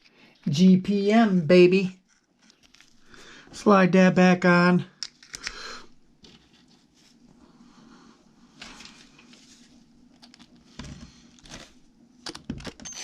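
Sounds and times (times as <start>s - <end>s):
plastic parts clicking: 5.0s - 5.6s.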